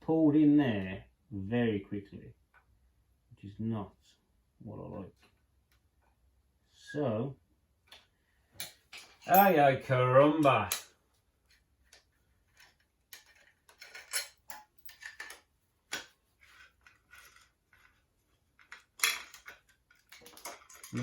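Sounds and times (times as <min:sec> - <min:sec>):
metal tools clinking and scraping: 0:08.6 - 0:09.8, 0:12.5 - 0:15.4, 0:18.6 - 0:21.0.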